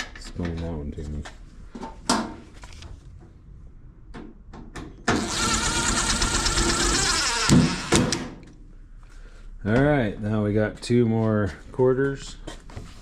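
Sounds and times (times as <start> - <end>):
power drill motor whine: 5.1 - 8.3.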